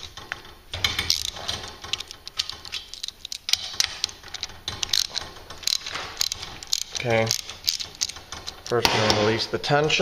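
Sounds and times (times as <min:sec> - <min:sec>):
metal hardware clinking: 0:00.0 - 0:10.0
louder knocks: 0:08.8 - 0:09.5.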